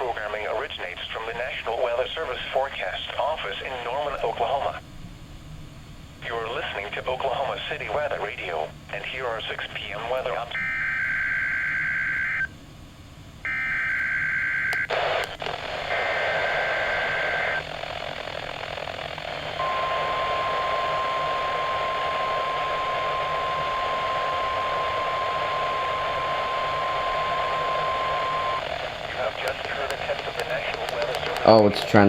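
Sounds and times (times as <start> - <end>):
radio static hiss: 0.0 - 4.9, 6.2 - 12.5, 13.4 - 32.0
steady alarm tone: 10.6 - 12.5, 13.4 - 14.9, 15.9 - 29.4.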